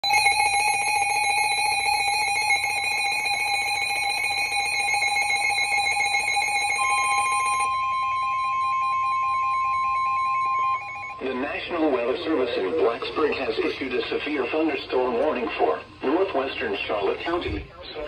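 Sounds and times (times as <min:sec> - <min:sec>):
electronic alarm tone: 0:00.0 - 0:12.4
pure warning tone: 0:00.0 - 0:13.9.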